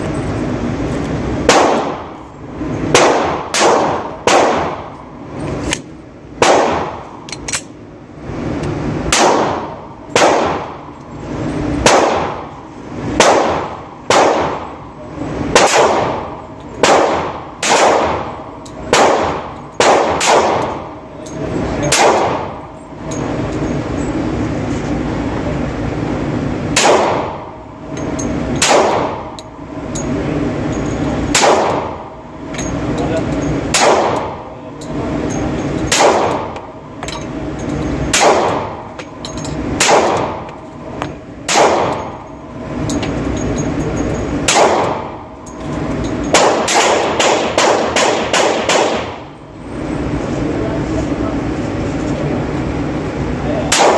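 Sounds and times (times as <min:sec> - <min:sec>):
pistol shots: 0:01.4 - 0:02.2, 0:02.8 - 0:05.0, 0:06.4 - 0:07.6, 0:09.1 - 0:10.9, 0:11.8 - 0:12.5, 0:13.2 - 0:14.8, 0:15.5 - 0:21.0, 0:21.8 - 0:22.6, 0:26.7 - 0:27.6, 0:28.6 - 0:29.4, 0:31.3 - 0:32.1, 0:33.6 - 0:34.5, 0:35.9 - 0:36.8, 0:38.1 - 0:38.9, 0:39.7 - 0:40.6, 0:41.4 - 0:42.2, 0:44.4 - 0:45.2, 0:46.3 - 0:49.3, 0:53.7 - 0:53.9.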